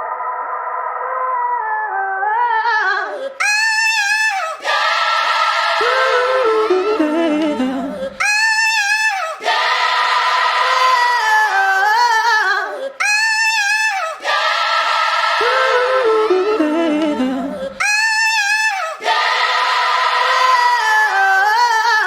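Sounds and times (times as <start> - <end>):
layered sung vocals music: 4.0 - 8.2, 8.8 - 22.0.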